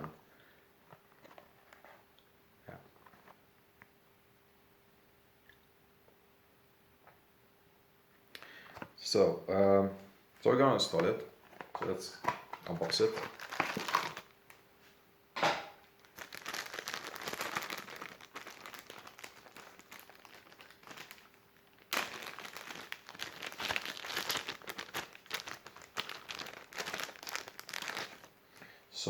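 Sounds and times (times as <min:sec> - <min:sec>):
packaging crinkling: 0:10.9 - 0:14.6, 0:15.9 - 0:28.8.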